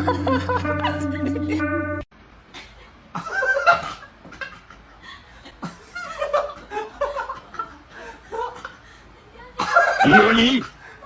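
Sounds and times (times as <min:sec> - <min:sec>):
person laughing: 0:00.0 - 0:01.7.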